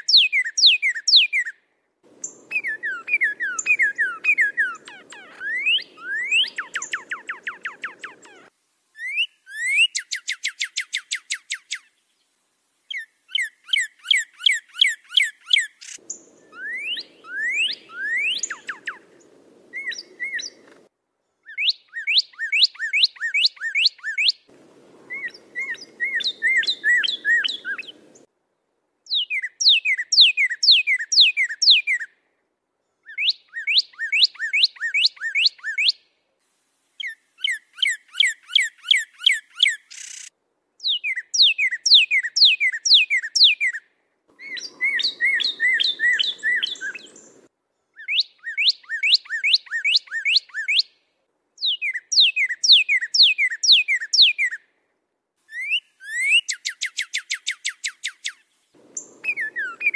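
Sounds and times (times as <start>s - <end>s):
songbird whistles and trills: 0.0s - 1.6s, 2.2s - 12.0s, 12.9s - 28.3s, 29.1s - 32.1s, 33.0s - 36.0s, 37.0s - 51.0s, 51.6s - 54.6s, 55.5s - 59.9s
low background hiss: 0.1s - 21.5s, 24.4s - 33.1s, 36.0s - 41.0s, 43.9s - 48.0s, 58.3s - 59.9s.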